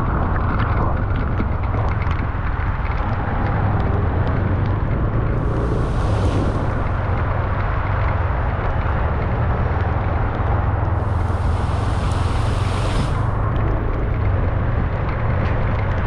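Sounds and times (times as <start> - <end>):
car driving on wet road: 1.9 - 16.0
hissing rush: 5.4 - 7.5, 10.9 - 13.6.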